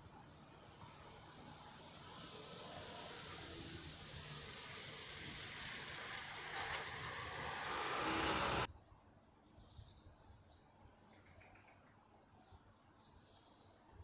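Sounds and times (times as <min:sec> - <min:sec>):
vehicle approaching: 0:00.1 - 0:08.7.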